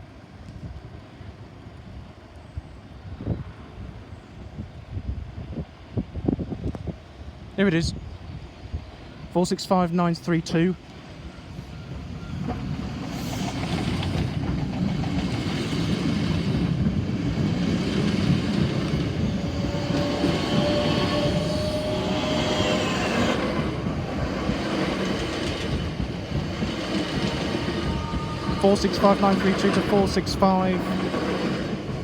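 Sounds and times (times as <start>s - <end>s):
faint train whine: 0.0s - 32.0s
train wheels rumbling on rail: 10.8s - 32.0s.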